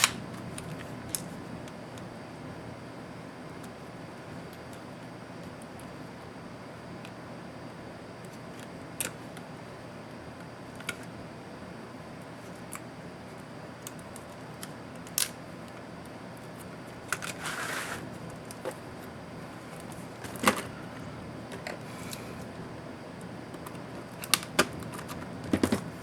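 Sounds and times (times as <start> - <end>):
scraping rustle: 17.3 - 18.1.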